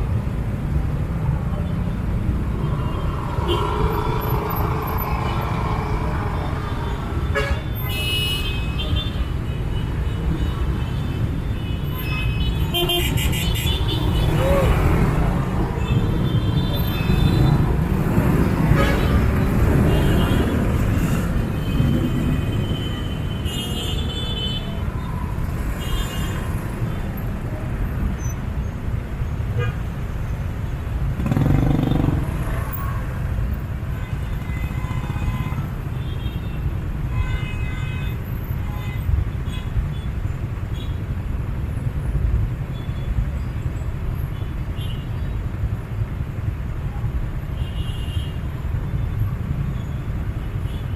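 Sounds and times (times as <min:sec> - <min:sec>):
rumble of traffic engines: 0:00.0 - 0:50.9.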